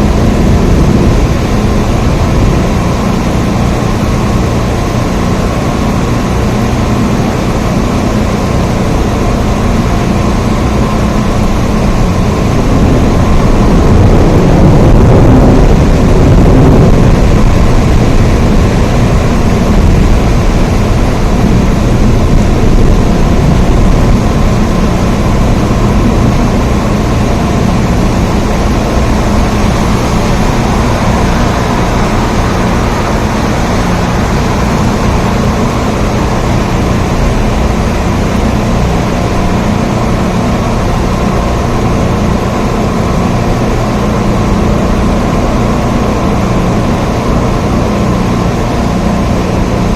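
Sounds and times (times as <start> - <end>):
deep low rumble: 0.0 - 4.0, 10.5 - 42.7
heavy rain: 0.0 - 49.9.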